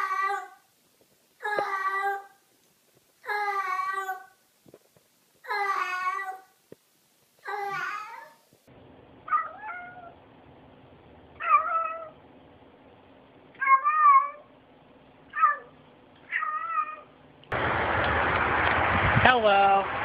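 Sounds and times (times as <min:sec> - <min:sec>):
cat meowing: 0:09.3 - 0:10.2, 0:11.4 - 0:12.2, 0:13.6 - 0:14.5, 0:15.3 - 0:15.7, 0:16.3 - 0:17.1.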